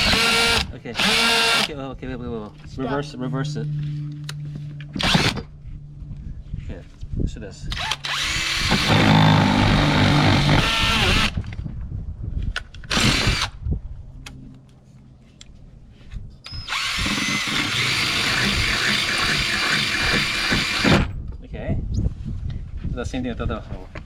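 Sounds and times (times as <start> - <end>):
power drill boring through metal: 0.0 - 1.8, 5.0 - 5.4, 7.7 - 11.4, 12.9 - 13.5, 16.5 - 21.1.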